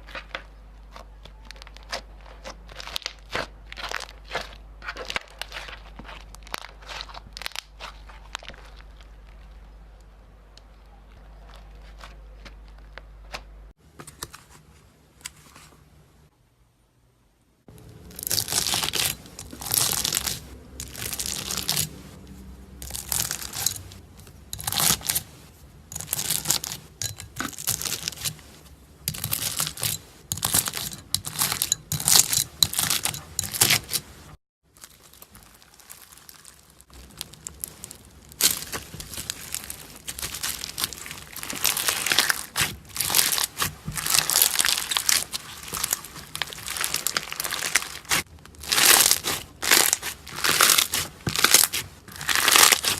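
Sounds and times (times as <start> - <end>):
slime squished by hand: 17.7 - 34.1, 34.8 - 52.9.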